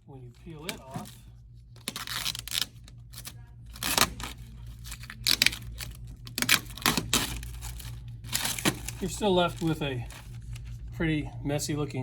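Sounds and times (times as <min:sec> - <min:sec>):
plastic film peeling: 0:00.3 - 0:10.9.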